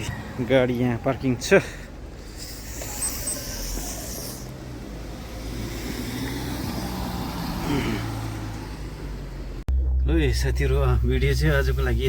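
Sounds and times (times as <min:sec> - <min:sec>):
road noise: 0:00.0 - 0:12.0
vehicle engine humming: 0:00.0 - 0:12.0.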